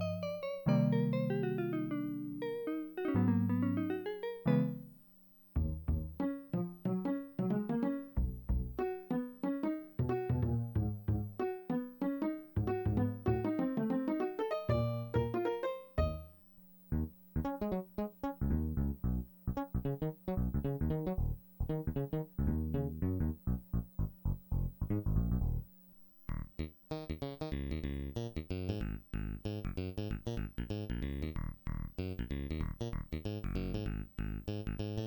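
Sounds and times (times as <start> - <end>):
keyboard playing notes: 0.0 - 25.6
bass line: 5.6 - 7.6, 8.2 - 9.0, 10.0 - 11.5, 12.5 - 13.6, 16.9 - 25.7, 26.3 - 35.0.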